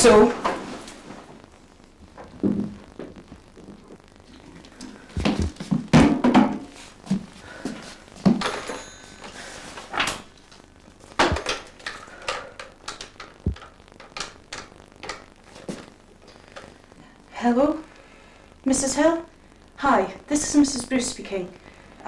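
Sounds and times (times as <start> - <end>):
irregular knocks and thumps: 2.2 - 4.0, 5.1 - 7.3, 11.2 - 12.0, 13.1 - 15.3.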